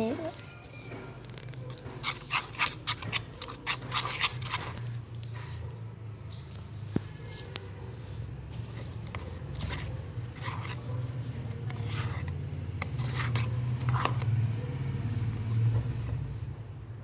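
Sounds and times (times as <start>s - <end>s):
slime squelching: 1.2s - 5.6s, 8.2s - 15.4s.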